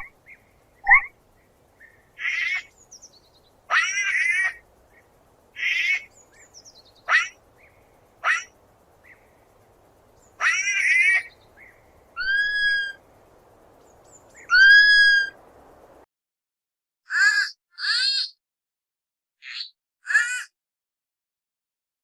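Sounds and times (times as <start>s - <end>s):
sloth whistled calls: 0.8s - 1.2s, 7.0s - 7.4s, 8.2s - 9.2s, 12.2s - 13.0s, 14.4s - 15.4s
sloth high-pitched squeaky cries: 3.7s - 4.6s, 7.1s - 7.4s, 8.2s - 8.5s, 10.4s - 11.3s, 12.2s - 13.0s, 14.5s - 15.4s, 17.1s - 18.4s, 19.4s - 20.5s.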